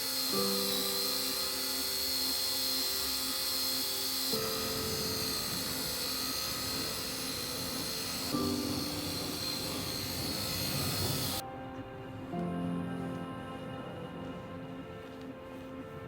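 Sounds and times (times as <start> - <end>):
polisher high whine: 0.0 - 11.6
quiet background music: 0.0 - 16.0.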